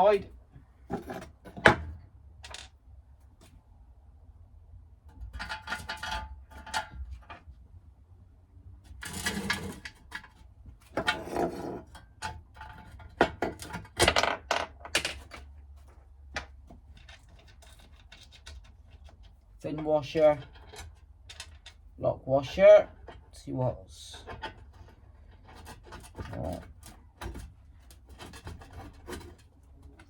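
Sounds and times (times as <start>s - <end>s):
metal bolts clinking and rattling: 19.7s - 21.9s.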